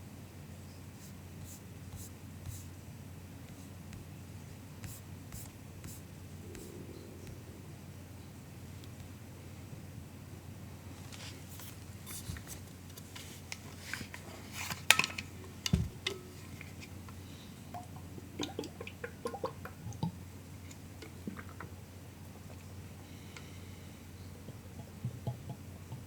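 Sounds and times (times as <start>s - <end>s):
dull low thud: 15.7s - 16.0s.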